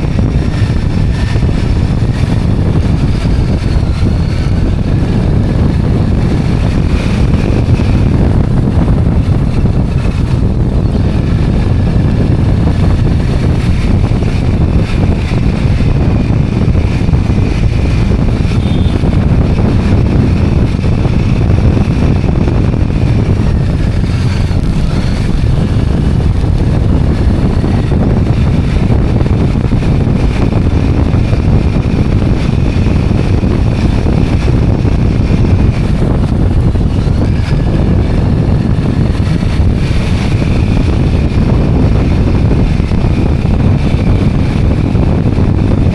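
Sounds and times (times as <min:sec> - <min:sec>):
motorcycle engine and road rumble: 0:00.0 - 0:45.9
wind blasting microphone: 0:00.0 - 0:45.9.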